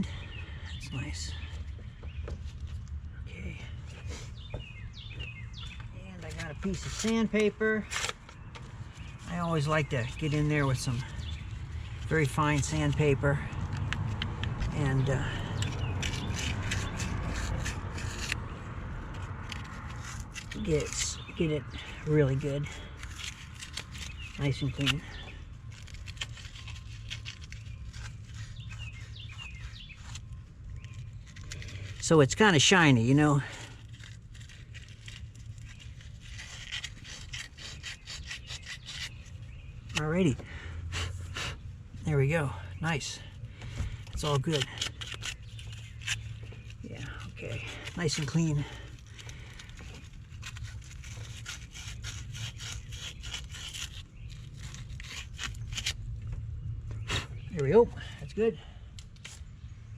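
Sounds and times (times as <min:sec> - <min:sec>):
sandpaper scratching on metal: 0:34.3 - 0:39.4, 0:50.4 - 0:56.0.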